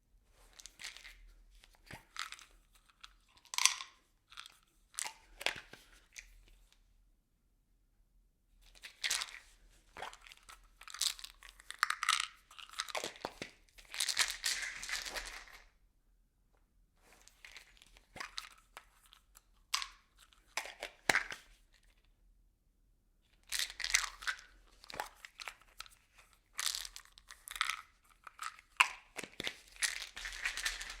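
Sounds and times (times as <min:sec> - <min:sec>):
objects rattling in plastic bottle: 0:10.0 - 0:15.6, 0:23.5 - 0:31.0.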